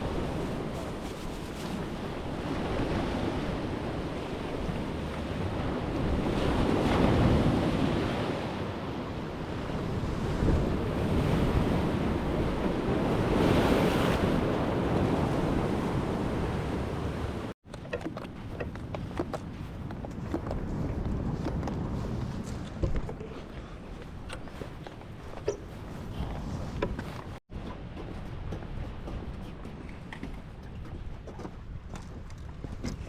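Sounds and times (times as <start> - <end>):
ocean surf breaking on sand: 0.0 - 17.6
wind buffeting microphone: 0.0 - 33.0.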